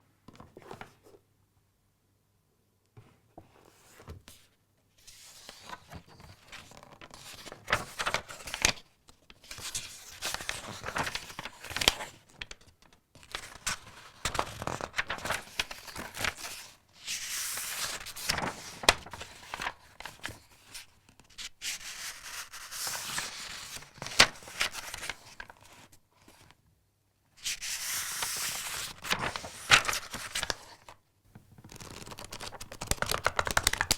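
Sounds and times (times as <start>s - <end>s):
book paper rustling: 0.3s - 1.2s, 5.1s - 26.6s, 27.4s - 33.9s.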